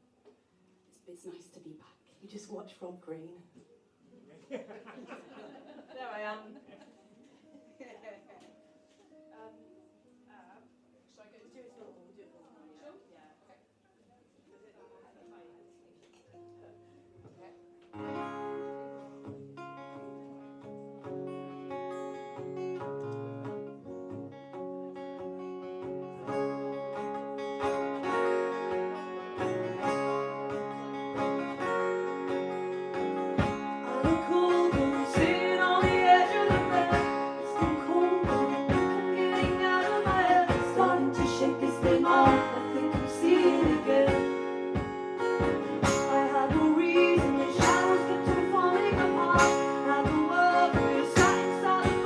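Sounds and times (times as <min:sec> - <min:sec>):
sustained guitar chords: 0:17.9 - 0:52.0
low steady drum beat: 0:33.4 - 0:52.0
person singing: 0:33.4 - 0:52.0.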